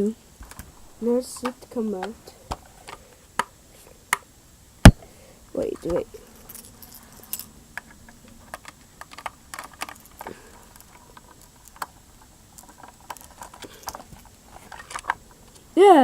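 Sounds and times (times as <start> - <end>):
screwdriver and plastic parts clicking: 7.8 - 11.9.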